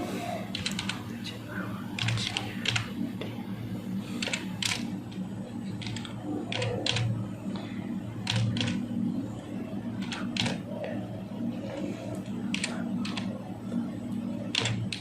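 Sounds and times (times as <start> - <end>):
low hum: 0.0 - 15.0
keyboard keys clicking: 0.5 - 1.0, 2.0 - 2.9, 4.2 - 4.9, 5.8 - 7.1, 8.3 - 8.8, 10.0 - 10.6, 12.5 - 13.3, 14.5 - 15.0.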